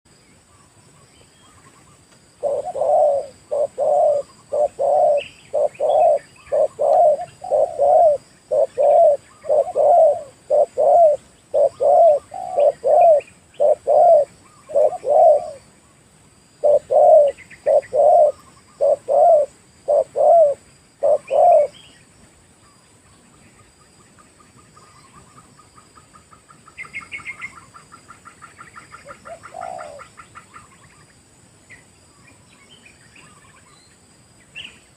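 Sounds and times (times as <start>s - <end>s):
dove cooing: 2.4s - 15.7s, 16.6s - 21.8s, 29.0s - 30.4s.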